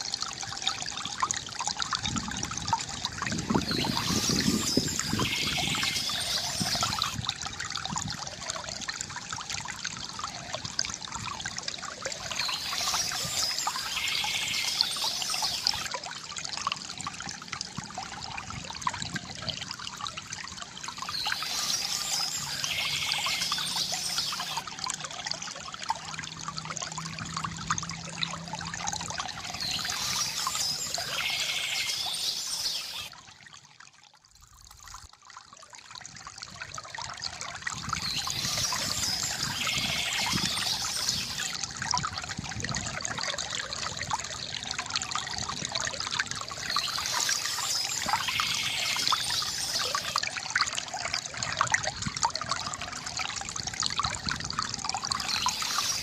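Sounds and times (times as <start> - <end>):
river water gurgling: 0.0 - 56.0
bird chirps: 3.6 - 7.2, 12.3 - 15.9, 21.0 - 24.6, 29.4 - 33.1, 38.0 - 41.5, 46.6 - 50.2, 55.2 - 56.0.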